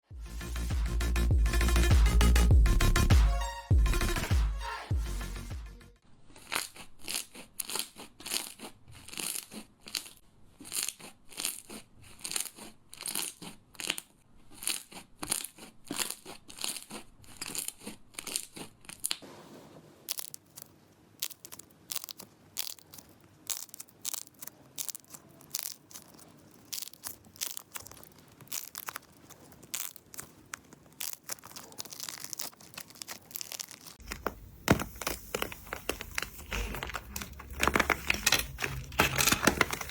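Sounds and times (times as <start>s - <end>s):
slime squelching and crackling: 20.0s - 39.9s.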